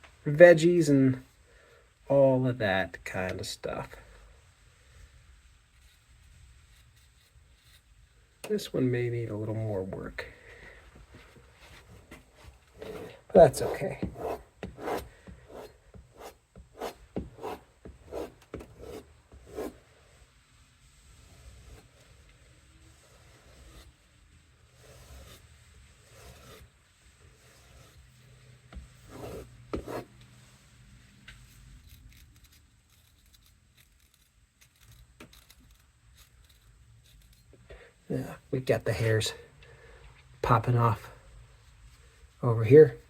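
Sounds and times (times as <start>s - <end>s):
soft scrape: 11.1s - 37.5s.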